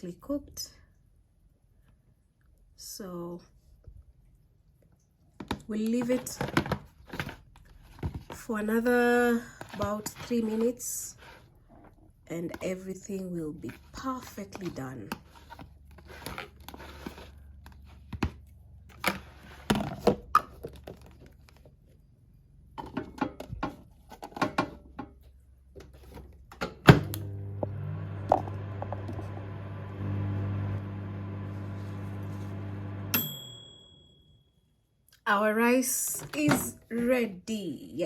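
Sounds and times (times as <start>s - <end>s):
microwave oven humming: 26.9s - 34.2s
microwave short beep: 32.5s - 34.2s.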